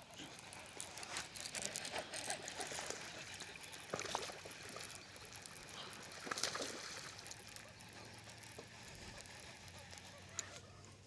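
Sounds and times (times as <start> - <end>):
water splashing and trickling: 3.9 - 8.5.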